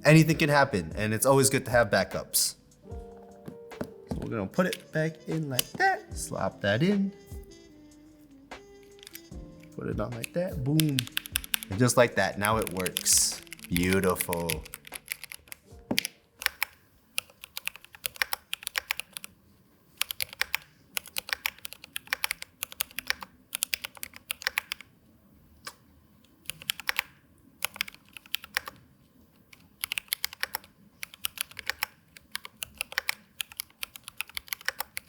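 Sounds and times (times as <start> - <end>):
mechanical keyboard typing: 9.0 - 9.3, 10.2 - 19.3, 20.0 - 24.9, 26.4 - 28.8, 29.5 - 35.0.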